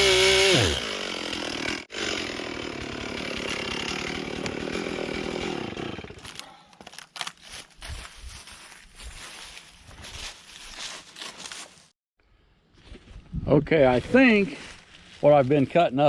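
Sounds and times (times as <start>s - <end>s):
chainsaw cutting a log: 0.0s - 6.5s.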